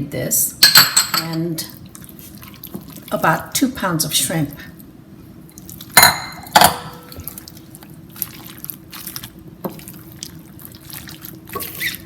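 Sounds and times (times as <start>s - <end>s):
batter squelching in a bowl: 7.1s - 12.0s.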